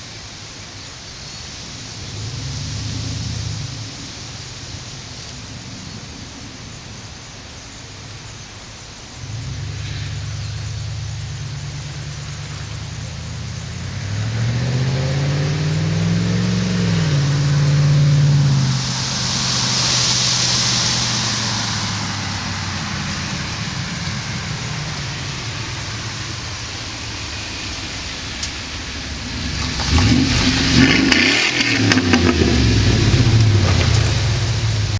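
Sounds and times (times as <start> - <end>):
spinning tyres rushing: 0.0 - 34.9
pickup engine revving hard: 9.2 - 34.9.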